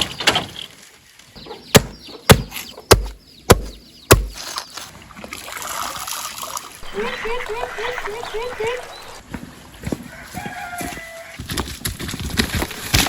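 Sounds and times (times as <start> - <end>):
heavy thudding strikes: 1.8 - 4.4.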